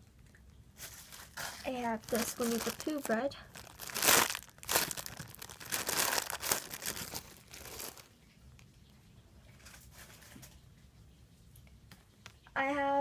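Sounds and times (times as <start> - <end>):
plastic packaging crinkling: 0.8 - 8.1.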